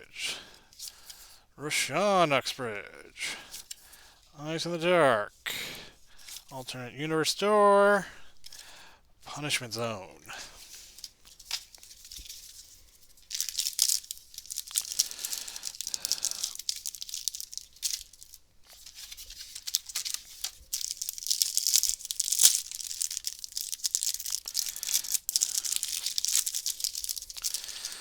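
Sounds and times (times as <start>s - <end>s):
wrapper being torn open: 11.4s - 28.0s.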